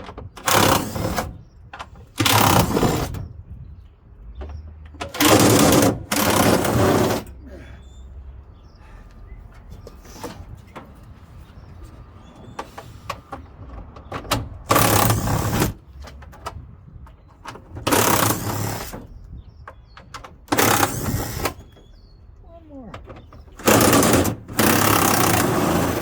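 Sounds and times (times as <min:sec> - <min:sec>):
power driver running: 0:23.6 - 0:26.0.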